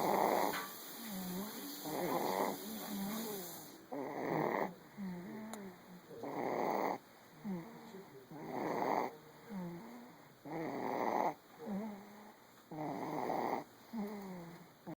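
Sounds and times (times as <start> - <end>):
person snoring: 0.0 - 14.6.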